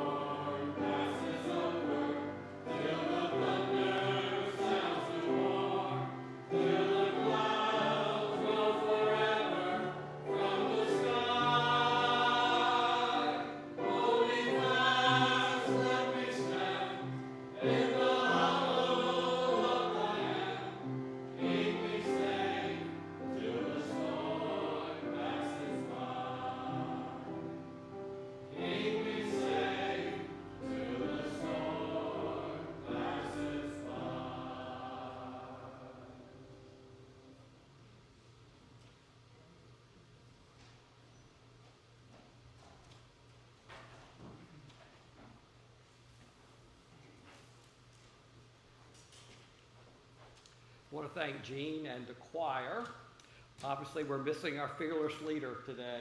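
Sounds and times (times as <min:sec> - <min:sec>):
church choir singing: 0:00.0 - 0:37.6.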